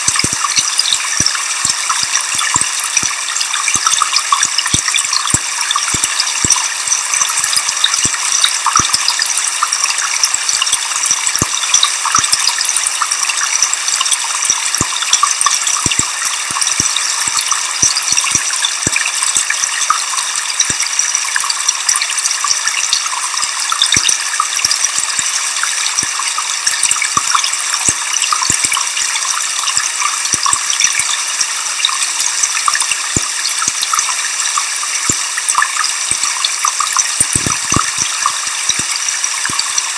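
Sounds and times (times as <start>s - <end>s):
small sharp clicks: 0.1s - 23.1s, 31.9s - 39.9s.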